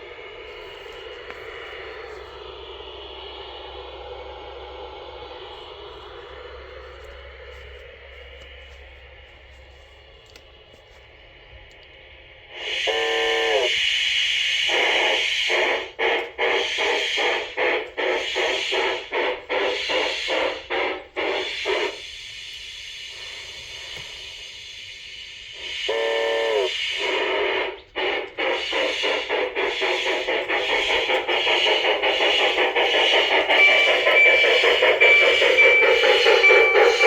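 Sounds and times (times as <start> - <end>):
model steam locomotive chuffing: 0.0 - 37.0
steam hiss: 12.4 - 37.0
train whistle blast: 12.6 - 16.0, 25.5 - 27.8, 28.5 - 37.0
bell ringing: 33.5 - 37.0.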